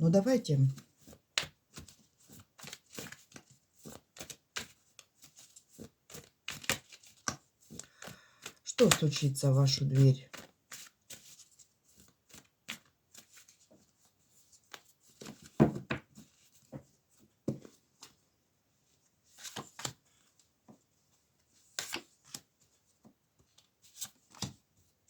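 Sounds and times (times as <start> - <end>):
cards being shuffled: 0.7 - 13.8, 14.5 - 16.8, 19.3 - 20.3, 21.4 - 22.8, 23.4 - 24.6
cards slapping: 2.6 - 9.1, 10.3 - 11.3, 21.7 - 22.4.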